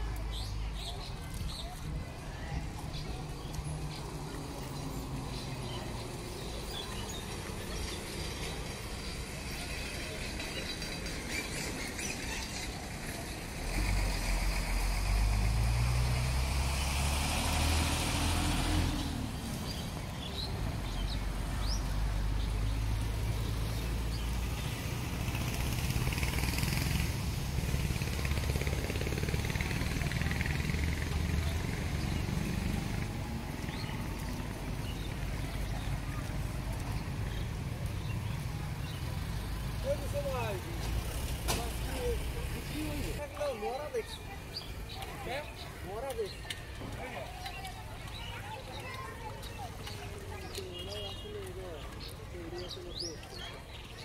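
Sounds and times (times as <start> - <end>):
engine rumbling: 0.0 - 53.9.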